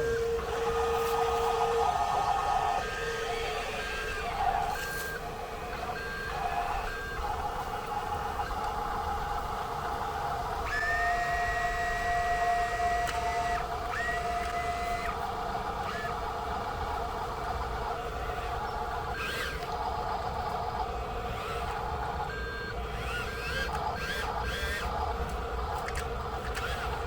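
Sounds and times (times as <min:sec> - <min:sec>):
small electric motor whining: 0:00.0 - 0:27.0
toy truck reversing beeps: 0:22.3 - 0:24.8.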